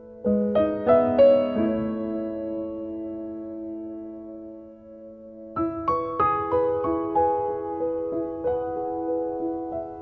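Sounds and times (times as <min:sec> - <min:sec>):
gentle piano melody: 0:00.0 - 0:10.0.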